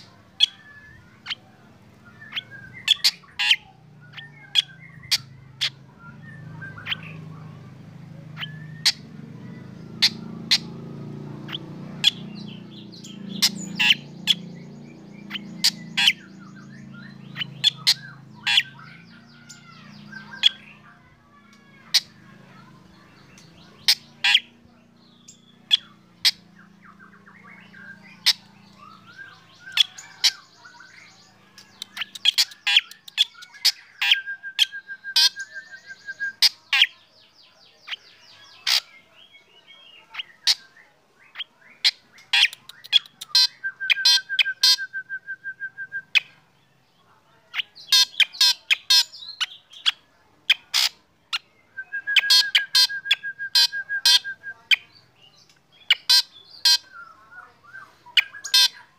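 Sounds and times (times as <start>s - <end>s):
bird whistling and trilling: 0.4s - 1.4s, 2.0s - 7.2s, 8.4s - 10.8s, 25.2s - 36.6s, 41.3s - 46.4s, 47.6s - 54.9s.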